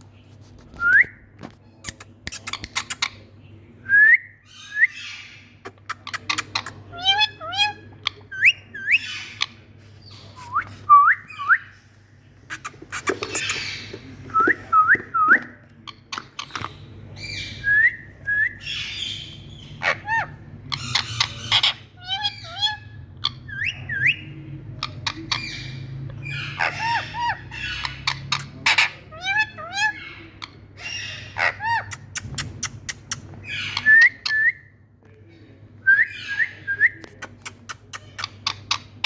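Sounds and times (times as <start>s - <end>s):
parrot squawks: 26.3s - 32.0s.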